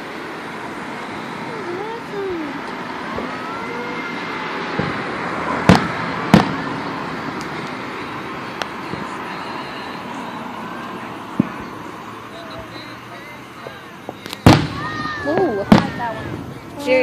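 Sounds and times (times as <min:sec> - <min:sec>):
fireworks bangs: 0:00.0 - 0:17.0
small firework pops: 0:05.7 - 0:06.6, 0:10.8 - 0:11.7, 0:13.6 - 0:16.4.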